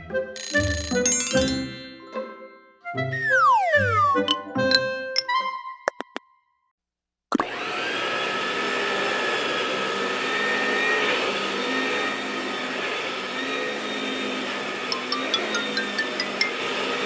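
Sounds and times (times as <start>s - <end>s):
toy vacuum cleaner whine: 7.5s - 17.0s.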